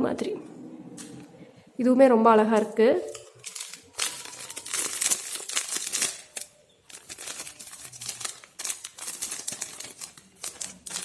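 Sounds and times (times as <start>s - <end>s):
plastic packaging clicks and rustles: 3.1s - 11.0s.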